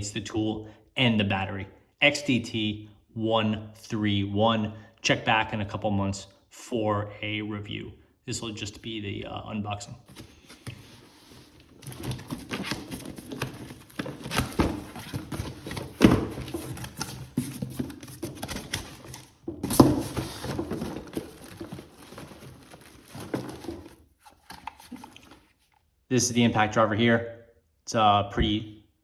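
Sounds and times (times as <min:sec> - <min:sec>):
knocks and clunks of contents: 0:10.1 - 0:25.4
cardboard box rustling and scraping: 0:10.1 - 0:25.5.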